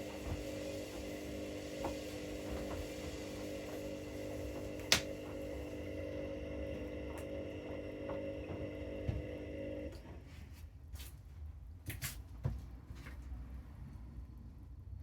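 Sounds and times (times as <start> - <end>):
washing machine motor hum: 0.0 - 10.4.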